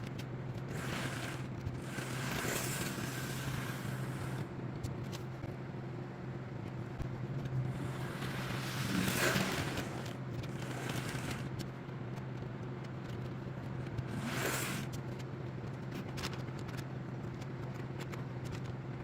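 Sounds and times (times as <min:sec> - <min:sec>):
model train motor humming: 0:00.6 - 0:04.5, 0:07.7 - 0:11.6, 0:14.0 - 0:15.0.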